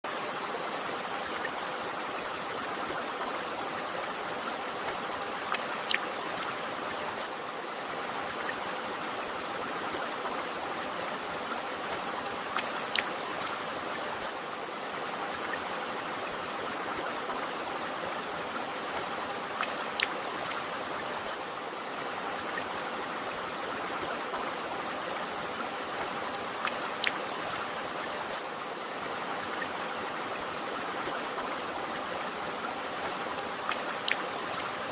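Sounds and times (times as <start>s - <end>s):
river water rushing: 0.1s - 34.9s.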